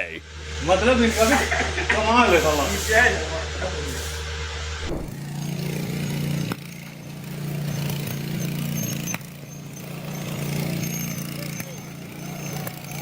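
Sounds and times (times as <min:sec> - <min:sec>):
engine running with low hum: 0:00.0 - 0:13.0.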